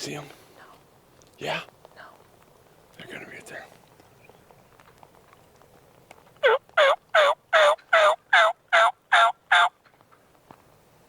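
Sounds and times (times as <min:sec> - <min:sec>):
turkey yelps: 0:06.4 - 0:09.8.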